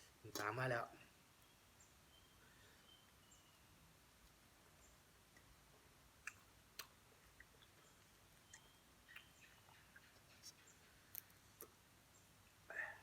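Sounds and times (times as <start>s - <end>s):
chewing clicks and smacks: 6.2s - 7.8s.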